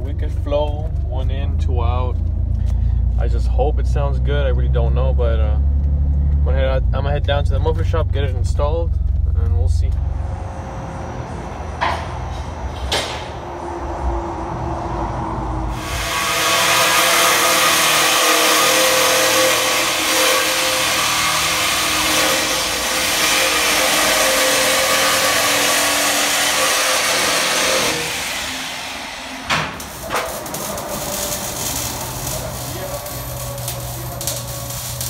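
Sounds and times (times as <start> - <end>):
road and wind noise: 0.0 - 16.6
vehicle engine: 0.0 - 35.0.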